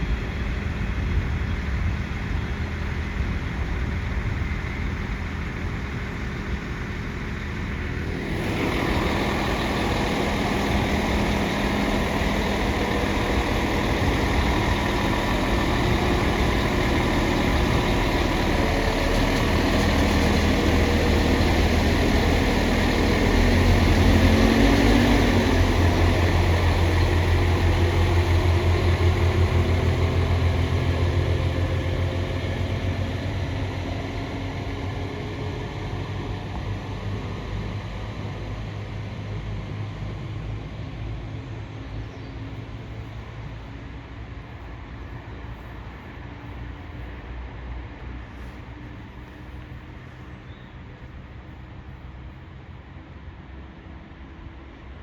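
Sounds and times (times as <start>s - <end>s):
diesel train engine running: 0.0s - 55.0s
deep rhythmic throb: 3.0s - 34.1s.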